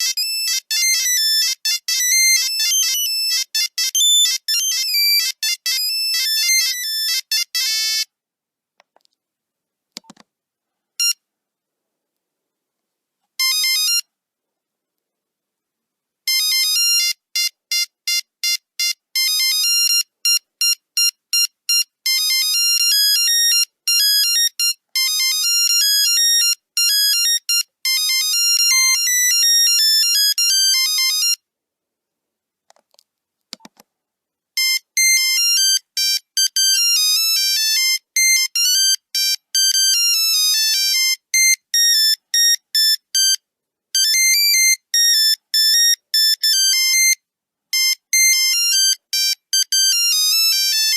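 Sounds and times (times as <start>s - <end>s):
monophonic ringtone melodies: 0.0s - 8.1s, 13.4s - 14.1s, 16.3s - 31.4s, 34.6s - 43.4s, 44.0s - 47.2s, 47.8s - 50.9s.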